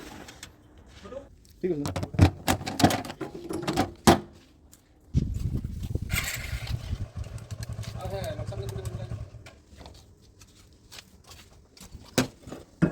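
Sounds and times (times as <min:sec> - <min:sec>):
diesel engine chugging: 0:06.1 - 0:09.7.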